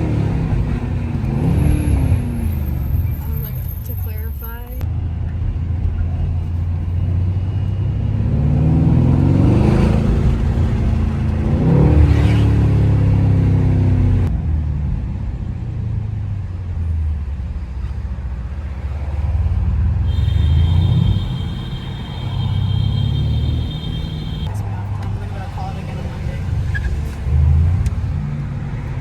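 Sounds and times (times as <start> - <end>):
car engine accelerating hard: 0.0 - 3.6, 5.5 - 17.6.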